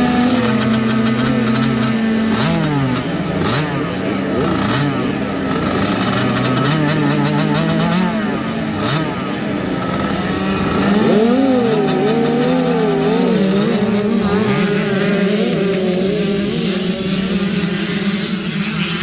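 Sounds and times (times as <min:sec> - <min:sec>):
motocross bike engines revving: 0:00.0 - 0:19.0.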